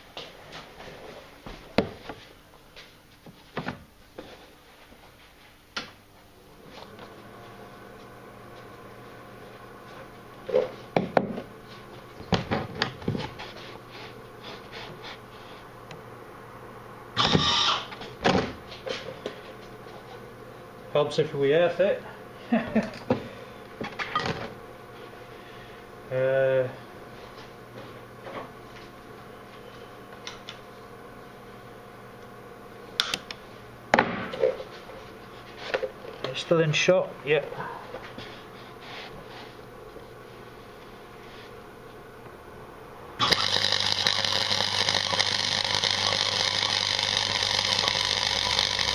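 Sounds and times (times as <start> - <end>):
welder electrical hum: 0.0 - 48.9
harsh noisy burst: 43.2 - 48.9.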